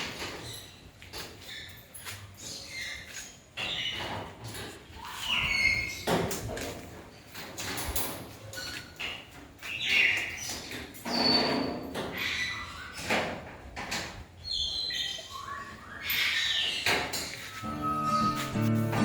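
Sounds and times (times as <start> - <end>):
birds squawking and chirping: 0.4 - 6.3, 9.6 - 13.2, 14.4 - 19.0.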